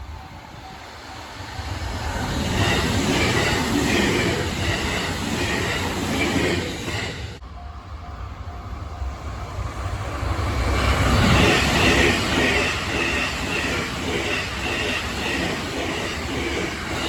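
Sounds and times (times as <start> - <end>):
train passing: 0.0 - 17.0
clatter of train wheels: 10.4 - 17.0.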